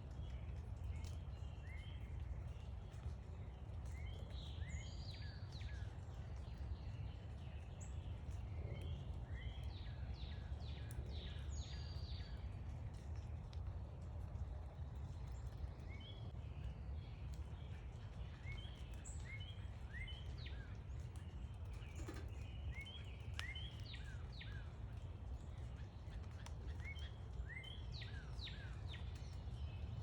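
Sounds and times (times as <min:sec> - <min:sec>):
low background rumble: 0:00.0 - 0:30.0
small birds chirping: 0:00.0 - 0:30.0.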